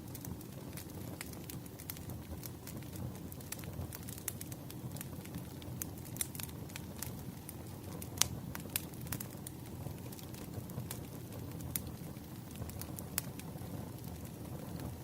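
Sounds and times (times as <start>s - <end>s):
burning wood crackling and popping: 0.0s - 15.0s
low rush of flame: 0.0s - 15.0s.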